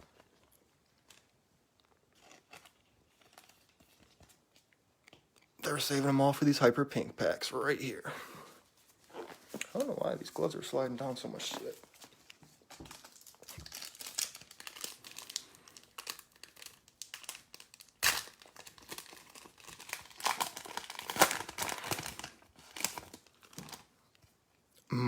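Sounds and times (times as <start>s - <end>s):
wrapper crinkling and tearing: 0.0s - 4.8s, 9.0s - 23.9s.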